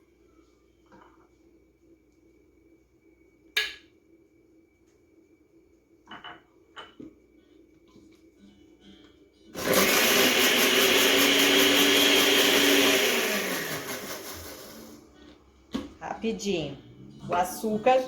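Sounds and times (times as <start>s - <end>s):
blender running and spinning down: 9.6s - 15.0s.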